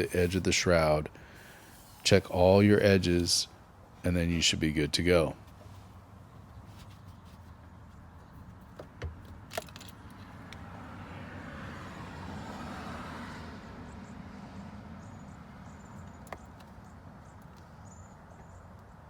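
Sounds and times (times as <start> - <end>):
vehicle passing: 9.4 - 16.2.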